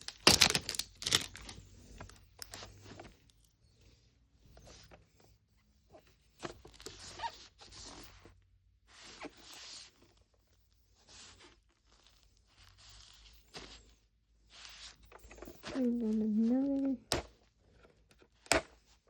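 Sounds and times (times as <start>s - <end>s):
packaging rustling and crinkling: 0.0s - 3.4s.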